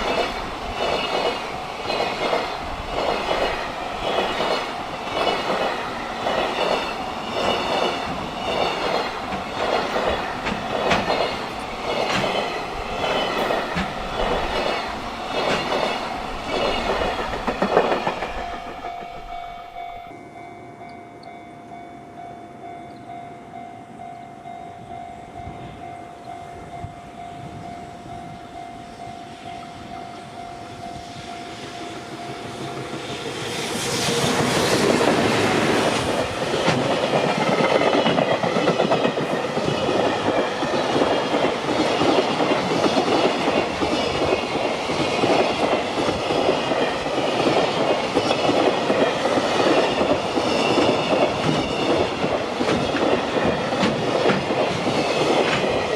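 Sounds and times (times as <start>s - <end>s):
wheels clattering over rail joints: 0.0s - 19.8s
steady high tone: 0.0s - 32.8s
freight train passing: 0.0s - 55.9s.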